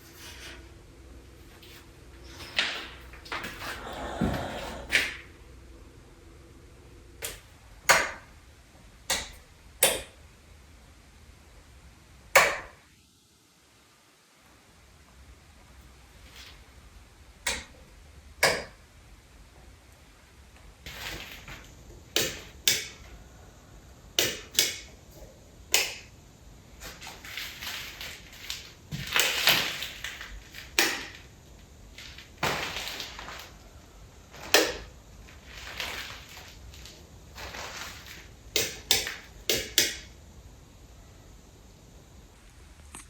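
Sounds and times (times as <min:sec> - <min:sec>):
rustling and scraping of objects: 0:00.0 - 0:05.5, 0:15.8 - 0:17.0, 0:20.0 - 0:23.7, 0:26.5 - 0:39.4.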